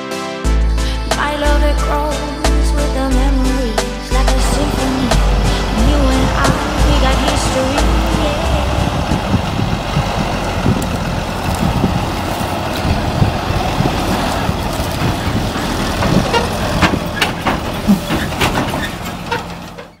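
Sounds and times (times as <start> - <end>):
diesel engine running: 0.5 - 20.0
sharp knocks or rattles: 13.3 - 20.0.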